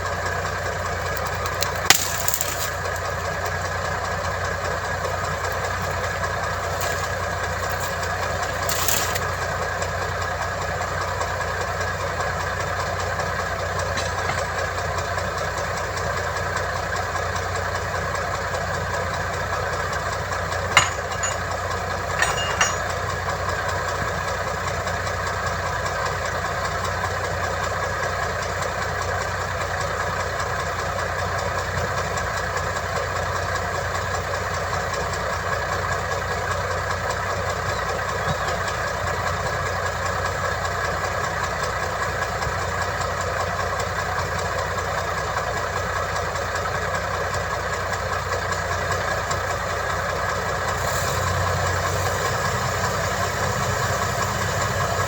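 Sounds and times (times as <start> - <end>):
heavy diesel engine running: 0.0 - 55.0
sharp metallic knocks: 20.8 - 21.6, 22.2 - 23.0.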